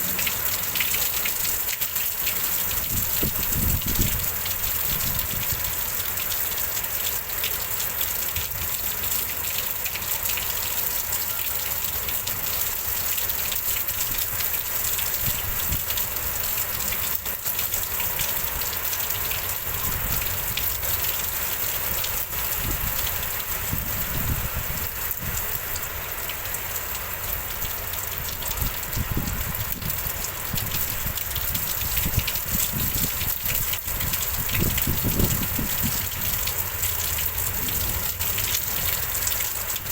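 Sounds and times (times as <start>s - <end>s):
heavy rain pouring: 0.0s - 39.9s
low rumbles of wind gusts: 2.6s - 5.9s, 22.4s - 26.0s, 28.1s - 39.2s.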